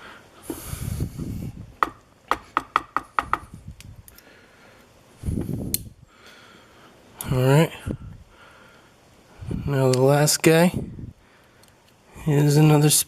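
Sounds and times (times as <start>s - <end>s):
dull knock: 1.8s - 3.4s.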